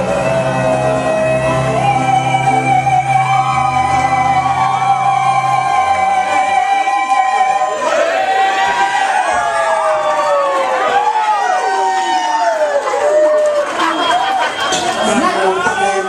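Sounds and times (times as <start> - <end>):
person singing: 0.0 - 7.9
live band music: 0.0 - 8.0.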